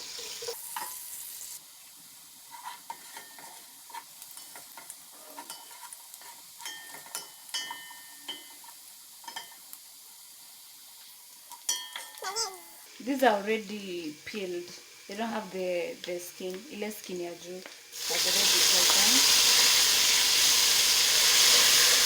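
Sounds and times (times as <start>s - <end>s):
onions sizzling in oil: 0.0s - 22.0s
utensil scraping a pan: 2.5s - 7.7s.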